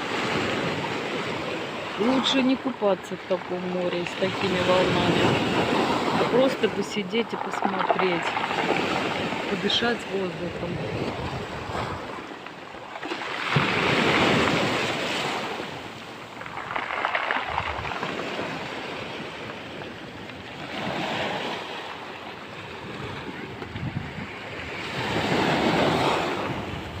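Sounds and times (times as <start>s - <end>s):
storm waves breaking on shore: 0.0s - 27.0s.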